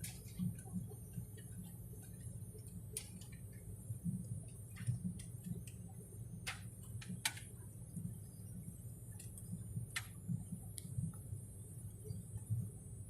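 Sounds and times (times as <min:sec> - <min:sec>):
light clicks and ticks: 0:00.0 - 0:08.1, 0:09.1 - 0:11.3.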